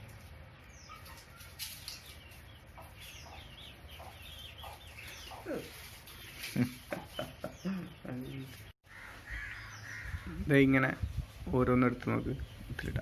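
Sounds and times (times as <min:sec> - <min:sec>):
chickens clucking: 0:00.9 - 0:08.7.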